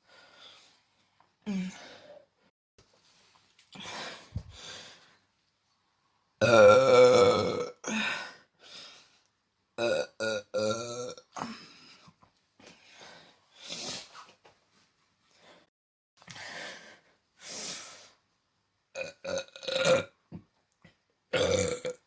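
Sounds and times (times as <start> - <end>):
woman burping: 6.4 - 8.0, 19.0 - 20.1, 21.3 - 22.0.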